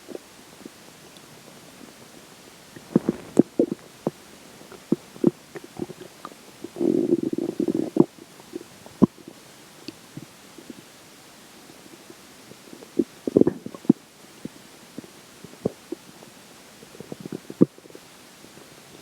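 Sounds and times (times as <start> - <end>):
stomach gurgling: 2.6 - 9.3, 12.0 - 16.2, 16.8 - 17.9.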